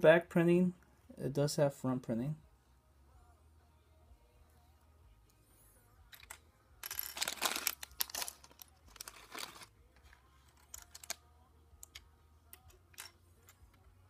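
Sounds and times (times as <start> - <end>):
plastic packaging crinkling: 7.0 - 9.7.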